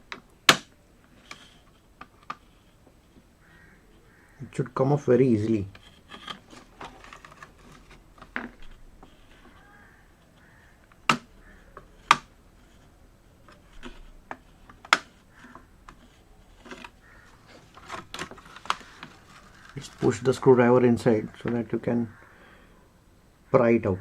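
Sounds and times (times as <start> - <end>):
sharp plastic snaps: 0.1 - 0.8, 10.3 - 12.3.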